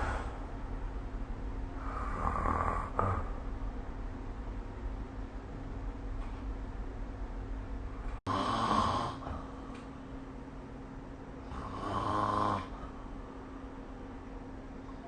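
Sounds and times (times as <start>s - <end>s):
steady low hum: 0.0s - 15.0s
person snoring: 1.8s - 3.4s, 8.3s - 9.4s, 11.4s - 13.0s.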